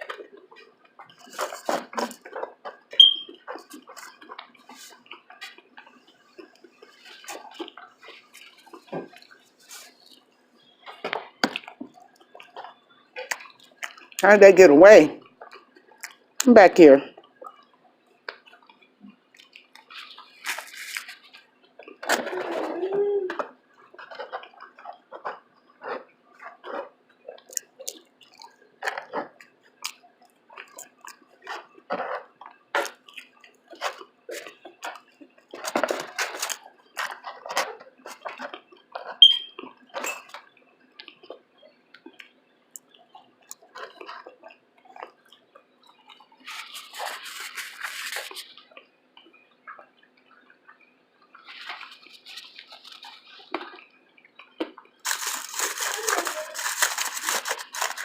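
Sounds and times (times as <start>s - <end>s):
chewing and lip-smacking: 0.0s - 14.2s, 15.2s - 16.4s, 17.1s - 58.0s
rustles: 55.1s - 58.0s.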